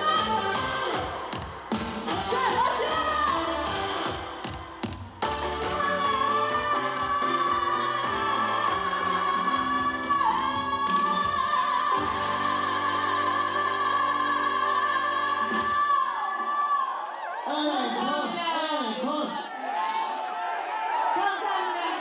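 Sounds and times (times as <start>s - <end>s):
live band accompaniment: 0.0s - 16.0s
woman singing a long high note: 5.2s - 16.9s.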